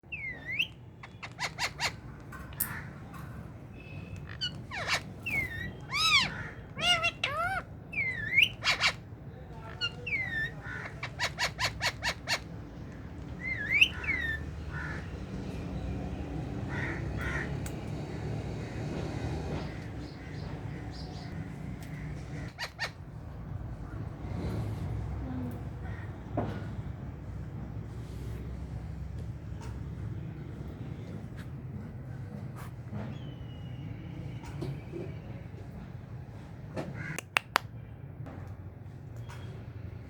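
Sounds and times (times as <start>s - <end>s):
parrots squawking and chirping: 0.1s - 15.1s, 21.9s - 23.1s.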